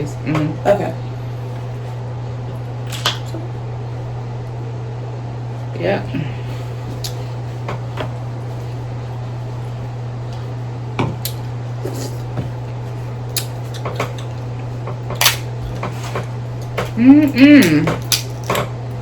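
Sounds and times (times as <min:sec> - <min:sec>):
steady low hum: 0:00.0 - 0:19.0
seafood shells cracking: 0:17.9 - 0:18.7.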